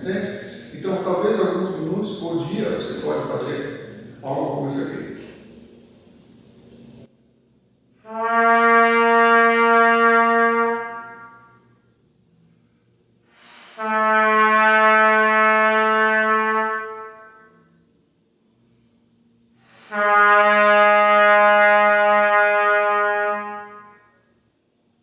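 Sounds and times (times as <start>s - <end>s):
trumpet long notes: 8.0s - 11.8s, 13.3s - 17.8s, 19.6s - 24.3s.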